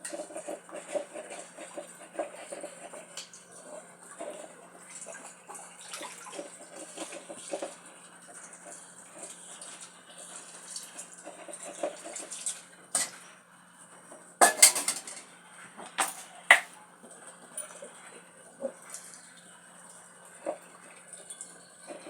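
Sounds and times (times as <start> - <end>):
hard objects clinking and knocking: 16.0 - 16.7.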